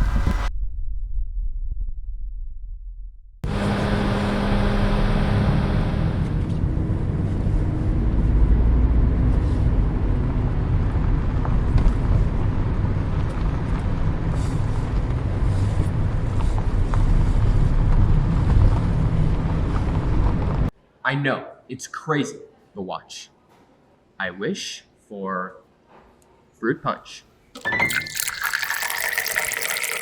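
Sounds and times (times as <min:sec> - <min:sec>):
car engine and road rumble: 0:03.4 - 0:20.7.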